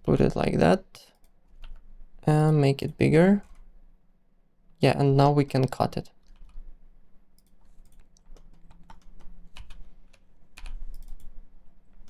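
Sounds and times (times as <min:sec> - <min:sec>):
computer keyboard clicking: 0:01.1 - 0:03.7, 0:06.2 - 0:06.6, 0:07.4 - 0:11.4.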